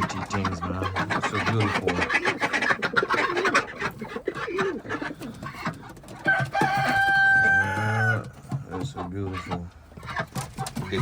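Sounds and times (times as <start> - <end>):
birds chattering: 0.0 - 11.0
chickens clucking: 0.0 - 11.0
rooster crowing: 6.2 - 8.2.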